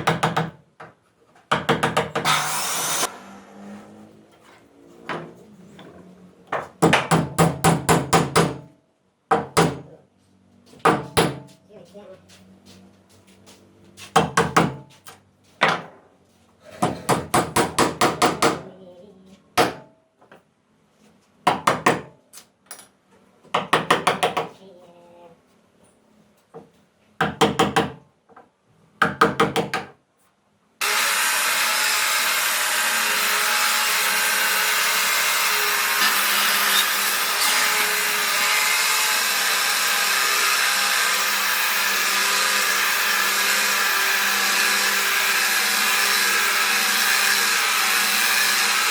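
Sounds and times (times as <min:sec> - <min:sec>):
woodworking power tool running: 0:02.3 - 0:04.2, 0:30.8 - 0:48.9.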